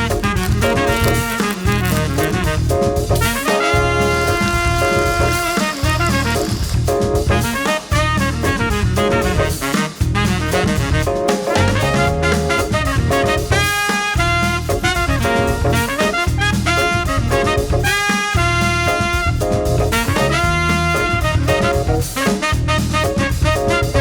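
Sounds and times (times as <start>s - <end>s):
swing jazz with brass: 0.0s - 24.0s.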